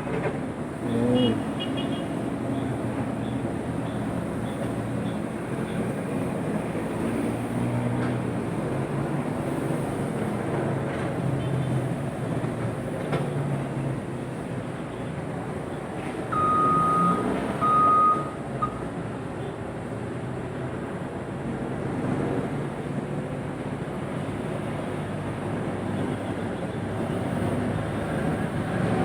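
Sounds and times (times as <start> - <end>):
backhoe engine running: 15.5 - 18.7
long high-pitched beeps: 16.3 - 18.9.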